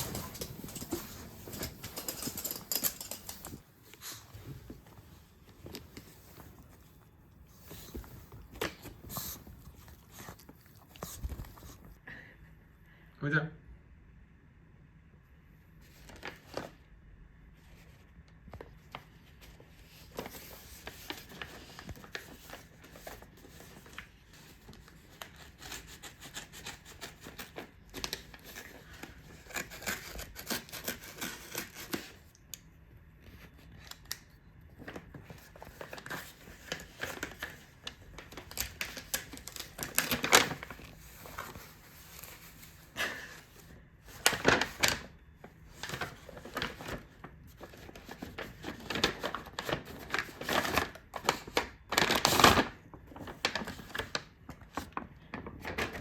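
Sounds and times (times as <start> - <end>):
packaging rustling and crinkling: 0.0 - 11.9, 34.8 - 56.0.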